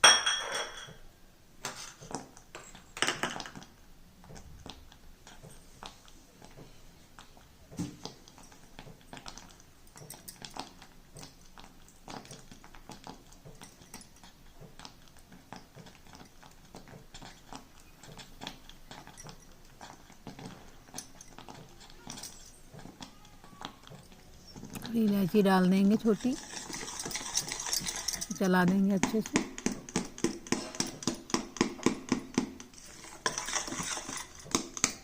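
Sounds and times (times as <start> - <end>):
spoon scraping a pan: 24.0 - 29.6, 32.6 - 35.0.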